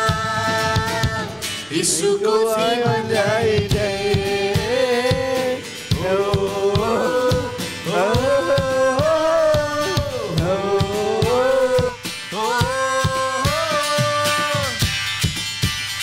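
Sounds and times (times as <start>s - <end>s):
person singing: 0.0s - 14.9s
guitar: 0.0s - 16.0s
steady drum beat: 0.0s - 16.0s.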